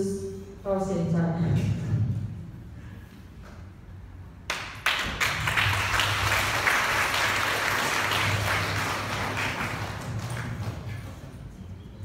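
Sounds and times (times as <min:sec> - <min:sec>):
audience applauding: 0:04.5 - 0:11.4.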